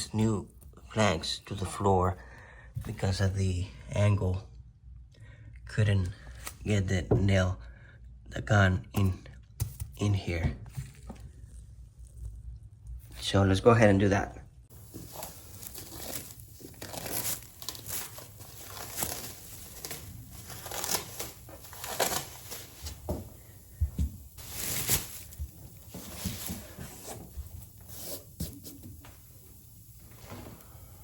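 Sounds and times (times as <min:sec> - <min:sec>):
rustling and scraping: 0:14.7 - 0:31.0.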